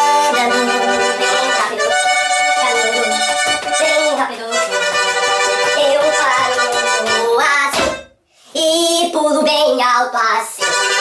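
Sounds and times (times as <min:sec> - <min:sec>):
accordion playing a tune: 0:00.0 - 0:07.6, 0:10.6 - 0:11.0.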